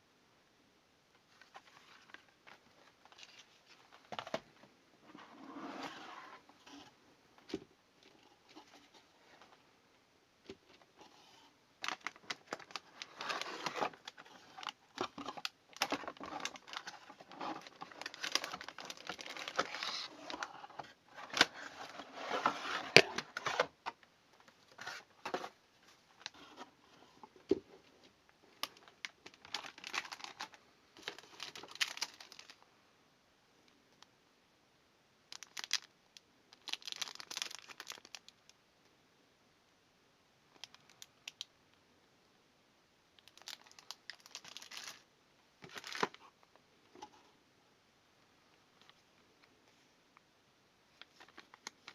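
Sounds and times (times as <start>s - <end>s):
packaging crinkling and rustling: 1.3s - 4.5s, 10.5s - 24.0s, 28.6s - 32.6s, 35.3s - 35.9s, 36.5s - 38.4s, 43.2s - 45.0s, 45.6s - 46.3s, 51.0s - 51.9s.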